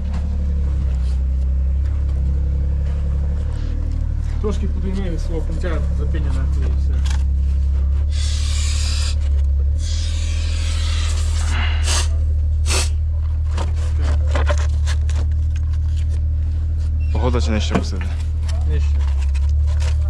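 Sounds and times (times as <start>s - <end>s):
machinery engine drone: 0.0s - 20.0s
scraping or hissing bursts: 8.1s - 13.0s.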